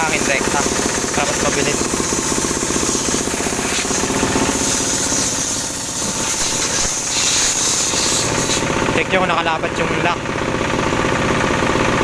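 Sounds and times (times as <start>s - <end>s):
engine machine rattling: 0.0s - 12.0s
compressed air hissing: 1.7s - 8.8s.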